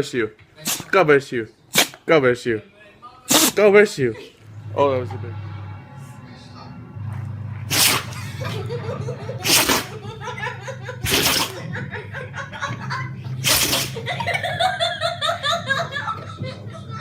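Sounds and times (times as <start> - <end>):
dog sneezing: 0.6 - 1.0, 1.7 - 2.0, 3.3 - 3.6, 7.7 - 8.6, 9.4 - 10.0, 11.0 - 11.7, 13.4 - 14.1
person laughing: 8.2 - 17.0.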